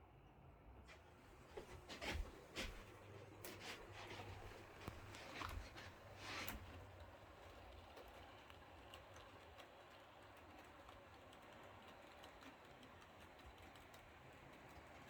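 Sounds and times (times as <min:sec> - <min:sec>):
model train wheels clicking: 0:03.4 - 0:15.0.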